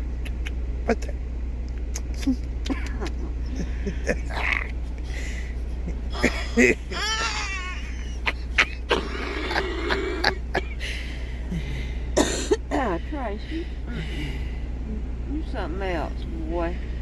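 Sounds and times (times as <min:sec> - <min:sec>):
truck engine idling: 0:00.0 - 0:17.0
dog whining and whimpering: 0:06.1 - 0:10.6.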